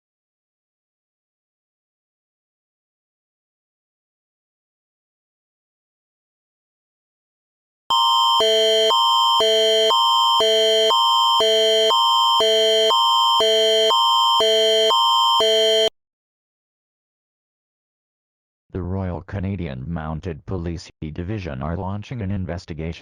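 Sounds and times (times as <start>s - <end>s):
alternating alert chords: 7.9s - 15.9s
steady high tone: 7.9s - 15.9s.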